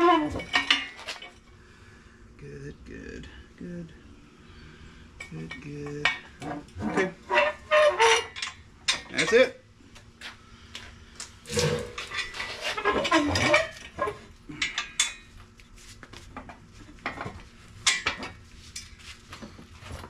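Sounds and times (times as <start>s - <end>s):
metal tools clanking: 0.0s - 1.4s, 5.2s - 9.5s, 11.5s - 15.3s.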